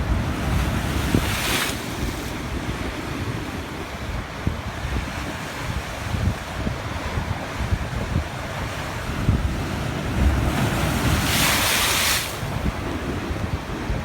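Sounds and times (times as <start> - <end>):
sea surf washing on shore: 0.0 - 14.0
wind buffeting microphone: 0.0 - 14.0.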